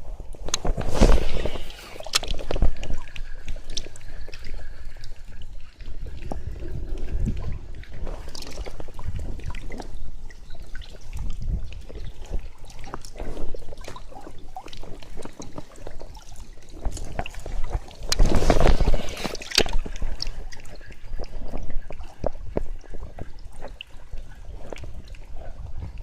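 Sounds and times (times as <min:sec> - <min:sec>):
water sloshing and trickling: 0:00.0 - 0:26.0
small irregular clicks: 0:00.3 - 0:07.1.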